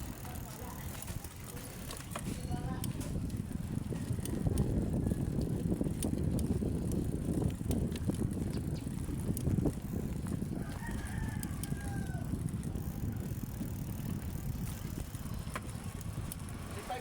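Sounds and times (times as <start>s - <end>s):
wind and riding rumble: 0.0s - 17.0s
rooster crowing: 10.5s - 13.2s.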